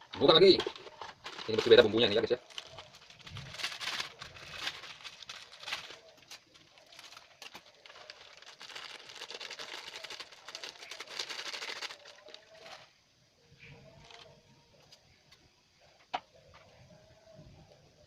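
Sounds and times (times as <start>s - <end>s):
plastic packaging crinkling: 0.0s - 12.9s
sachet tearing open: 0.7s - 12.9s.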